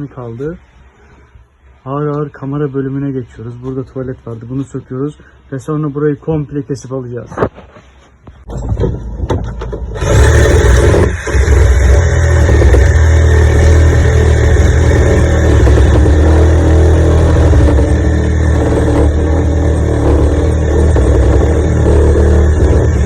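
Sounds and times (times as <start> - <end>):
power cutting tool cutting wood: 9.9 - 23.0.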